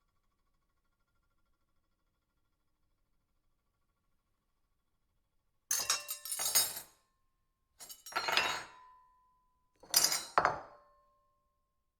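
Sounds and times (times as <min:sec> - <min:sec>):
silverware clinking on plate: 0:05.7 - 0:06.9, 0:07.8 - 0:09.0, 0:09.8 - 0:10.9.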